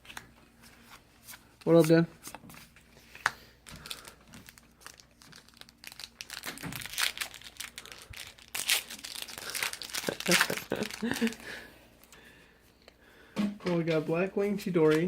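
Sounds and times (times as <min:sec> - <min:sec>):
foil wrapper crinkling: 0:03.6 - 0:12.2.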